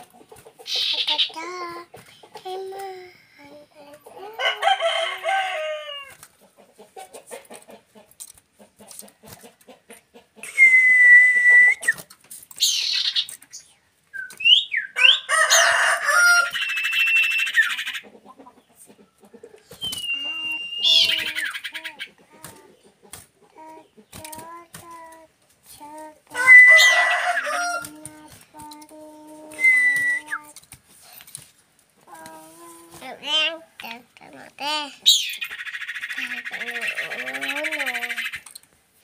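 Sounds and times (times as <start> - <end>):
chickens clucking: 0.0 - 13.8, 14.4 - 38.6
bird chattering trills: 0.6 - 1.4
bird whistling: 10.4 - 12.0, 14.2 - 15.2, 16.6 - 17.7, 19.8 - 21.7, 29.6 - 30.5.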